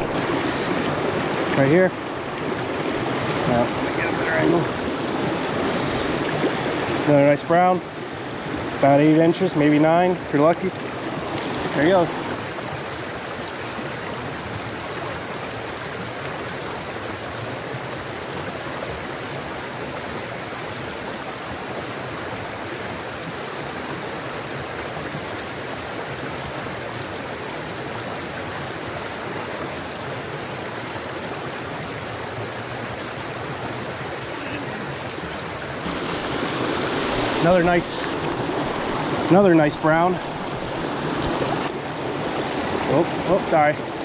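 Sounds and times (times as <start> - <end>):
stream rushing over rocks: 0.0 - 44.0.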